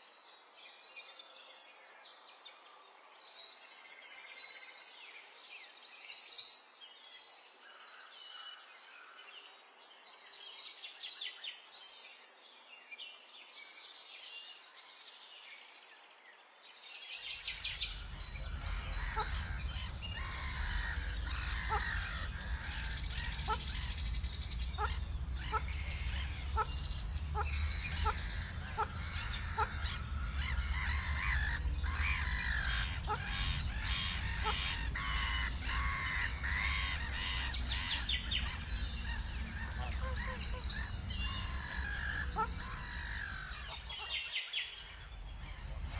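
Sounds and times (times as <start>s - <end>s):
birds chirping and singing: 17.1s - 45.9s
steady low rumble: 17.5s - 45.9s.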